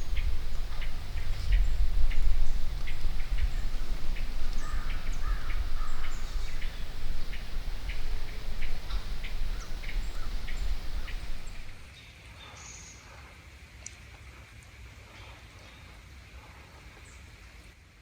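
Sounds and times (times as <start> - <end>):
birds calling: 0.0 - 11.9
wind rumble on microphone: 0.0 - 11.9.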